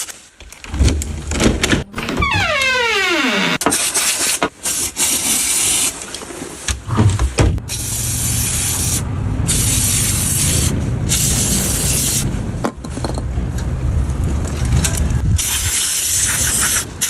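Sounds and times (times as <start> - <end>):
low rumble: 6.9 - 15.4.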